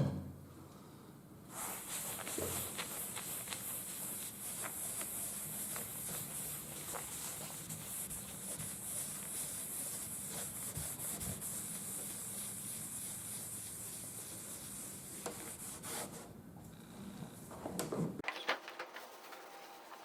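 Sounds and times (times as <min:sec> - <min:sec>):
hand rubbing paint: 0:01.5 - 0:16.3.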